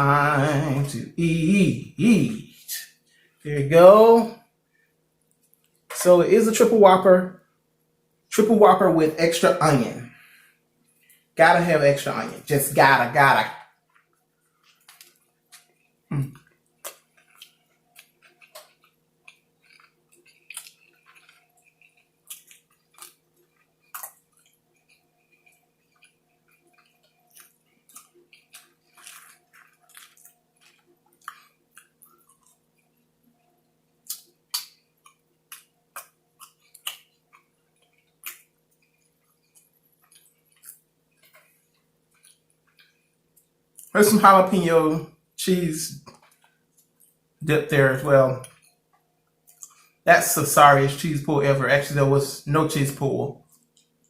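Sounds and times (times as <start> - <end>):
faint steady hum: 0.0 - 54.0
person chewing food: 5.2 - 6.0, 10.1 - 11.4, 13.5 - 43.9, 46.0 - 47.4, 48.4 - 50.0, 53.4 - 54.0
wet mouth clicks and smacks: 14.0 - 32.8, 34.0 - 41.5, 49.5 - 49.9.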